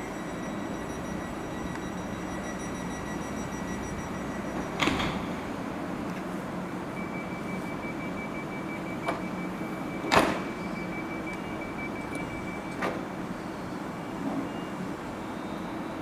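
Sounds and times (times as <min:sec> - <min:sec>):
thin high steady tone: 0:00.0 - 0:04.8
steady low hum: 0:00.0 - 0:10.0.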